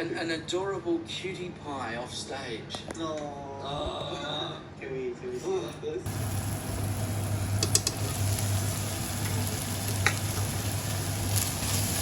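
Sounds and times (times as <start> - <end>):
food sizzling in a frying pan: 6.1 - 12.0
low hum: 6.1 - 12.0
utensil clicking against pan: 7.5 - 8.2, 9.2 - 10.6.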